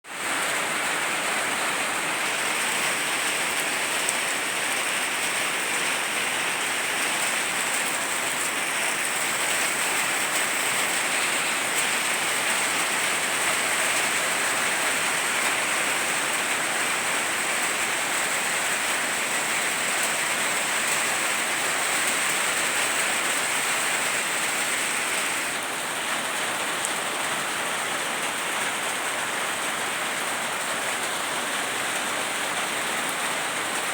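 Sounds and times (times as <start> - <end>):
rain pattering on surfaces: 0.2 - 33.9.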